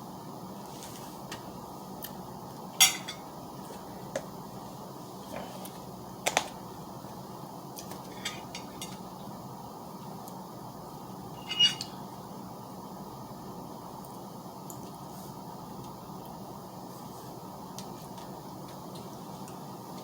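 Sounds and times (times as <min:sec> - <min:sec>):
utensils clicking on dishes: 0:11.4 - 0:12.0.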